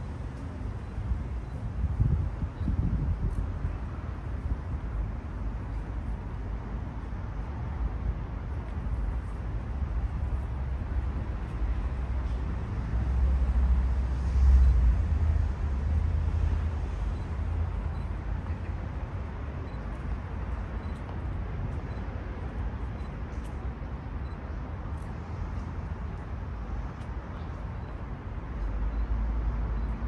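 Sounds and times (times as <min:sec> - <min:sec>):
wind buffeting microphone: 0:01.7 - 0:03.8.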